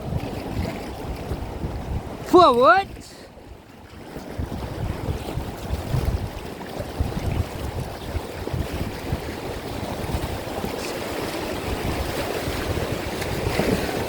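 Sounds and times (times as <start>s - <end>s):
wind on microphone: 0.0s - 14.0s
river water rushing: 2.1s - 3.3s, 10.0s - 14.0s.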